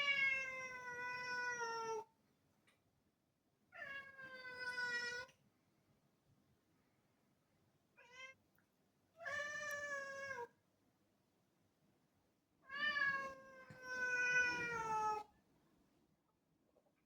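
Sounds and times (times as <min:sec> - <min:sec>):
cat meowing: 0:12.7 - 0:15.3.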